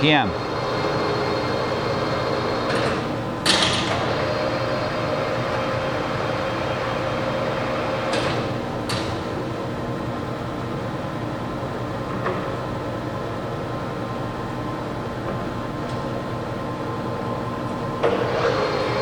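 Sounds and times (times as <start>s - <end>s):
lathe humming and whining: 0.0s - 8.8s, 16.4s - 19.0s.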